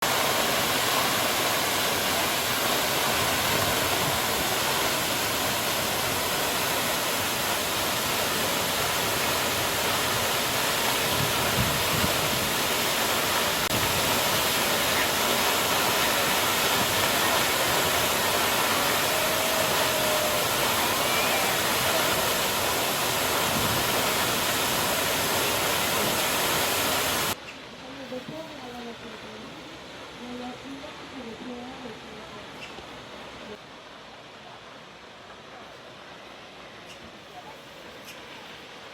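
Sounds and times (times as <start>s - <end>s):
waterfall rushing: 0.0s - 27.4s.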